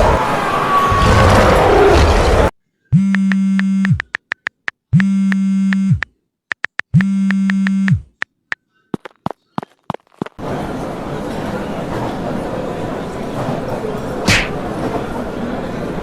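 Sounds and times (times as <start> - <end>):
clicks: 3.2 - 9.2
electronic buzzes: 4.9 - 8.2.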